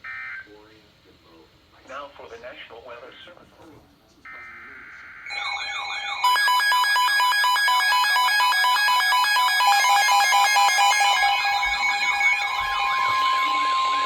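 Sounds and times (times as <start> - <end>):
weather alert radio alarms: 4.3 - 14.0.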